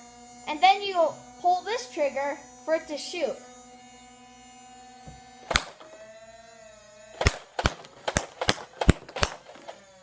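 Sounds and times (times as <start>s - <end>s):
toy blaster motor whining: 0.0s - 10.0s
toy blaster firing darts: 4.8s - 10.0s.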